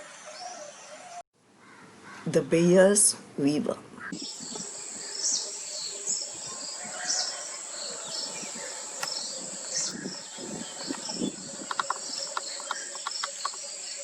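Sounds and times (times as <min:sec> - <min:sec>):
high-pitched insect chorus: 0:04.2 - 0:14.0.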